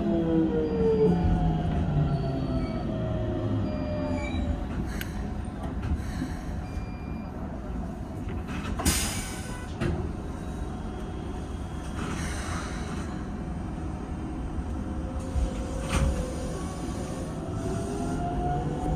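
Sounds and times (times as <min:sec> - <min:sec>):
train wheels rumbling on rails: 0:08.0 - 0:18.9.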